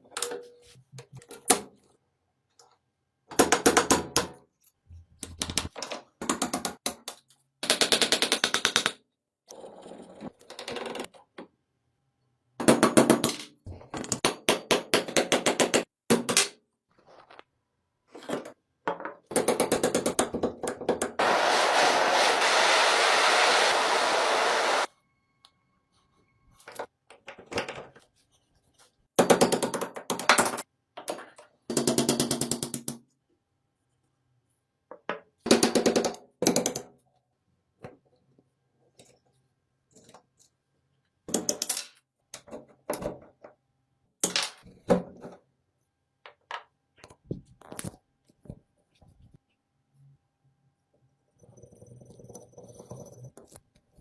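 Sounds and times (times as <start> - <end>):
power tool running: 21.2 - 24.9.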